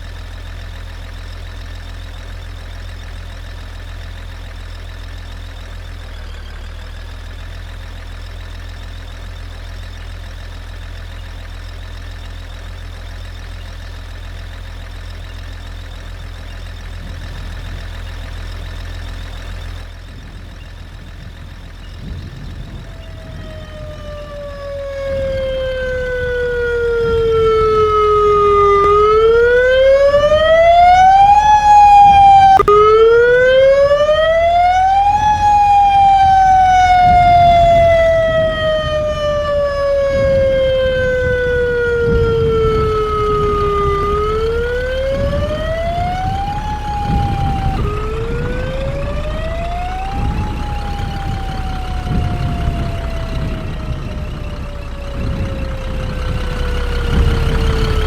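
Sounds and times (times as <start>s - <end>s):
warning siren wailing: 3.0s - 58.0s
low rumble: 19.8s - 58.0s.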